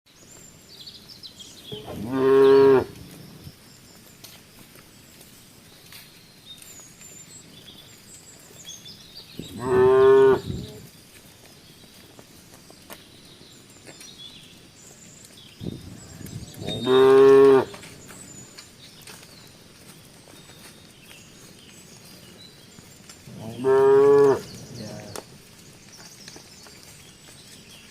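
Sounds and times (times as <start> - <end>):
cow mooing: 1.7 - 3.4, 9.4 - 10.9, 16.5 - 17.8, 23.3 - 25.2.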